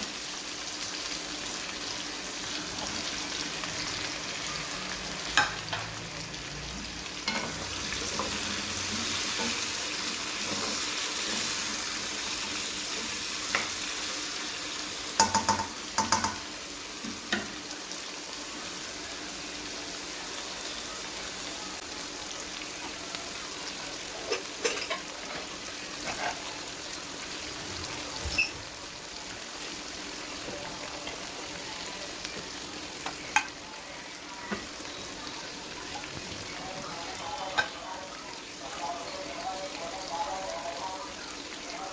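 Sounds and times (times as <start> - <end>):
food sizzling in frying pan: 0.0 - 41.9.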